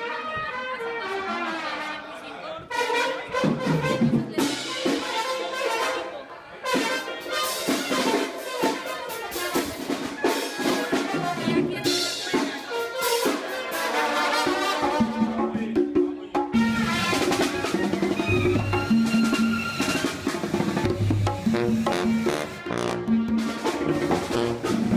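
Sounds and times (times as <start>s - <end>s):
brass band playing: 0.0s - 24.9s.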